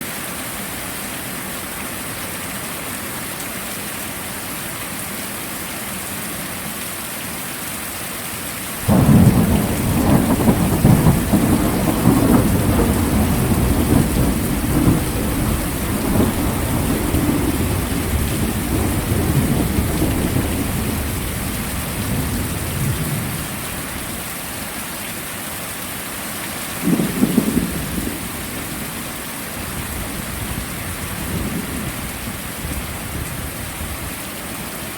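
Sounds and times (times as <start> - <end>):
heavy rain falling: 0.0 - 34.9
thunder clap: 8.8 - 23.5, 26.8 - 33.4
rolling thunder: 8.8 - 23.8, 26.8 - 34.1.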